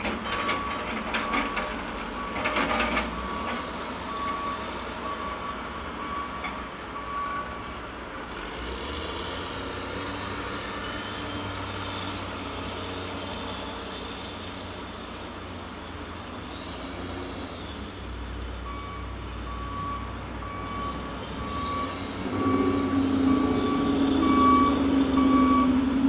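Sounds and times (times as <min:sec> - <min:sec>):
heavy equipment running: 0:00.0 - 0:08.8, 0:09.5 - 0:26.0
backup alarm beeping: 0:18.7 - 0:25.8.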